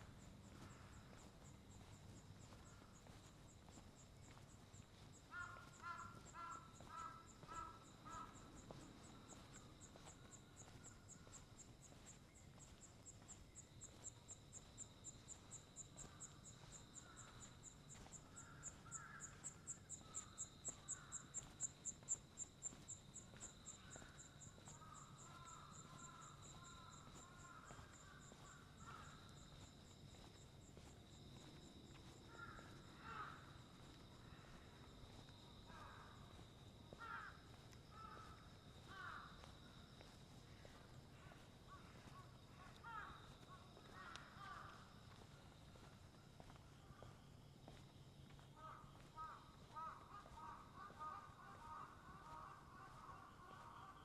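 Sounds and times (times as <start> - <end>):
high insect drone: 0.0 - 47.2
crows cawing: 0.5 - 1.3, 5.2 - 12.0, 15.5 - 29.7, 32.0 - 34.8, 35.6 - 45.2, 48.5 - 54.0.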